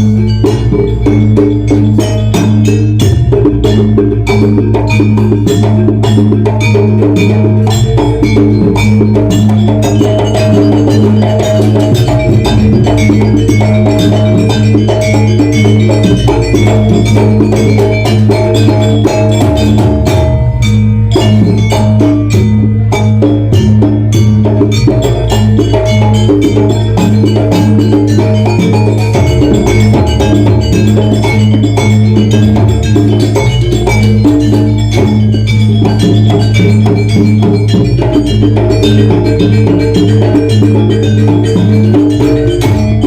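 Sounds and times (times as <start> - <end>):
drum and percussion rhythm: 0.0 - 43.0
gongs and metallophones ringing: 0.0 - 43.0.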